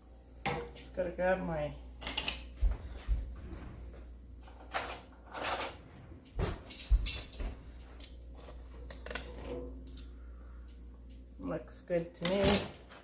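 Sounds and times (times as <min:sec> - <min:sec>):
cookware and utensils clattering: 0:02.0 - 0:02.5, 0:04.4 - 0:05.8.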